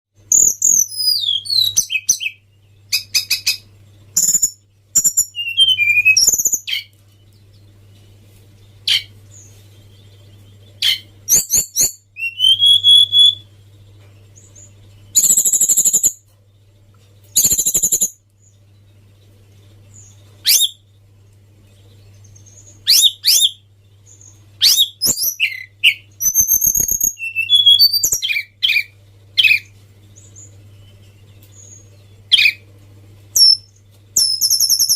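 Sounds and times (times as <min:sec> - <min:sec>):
bird whistling and trilling: 0:00.3 - 0:03.6, 0:04.2 - 0:06.9, 0:08.8 - 0:09.1, 0:10.8 - 0:13.5, 0:15.1 - 0:16.2, 0:17.3 - 0:18.2, 0:20.4 - 0:20.8, 0:22.4 - 0:29.7, 0:31.6 - 0:32.6, 0:33.3 - 0:34.9
steady low hum: 0:01.6 - 0:26.9, 0:28.1 - 0:34.9.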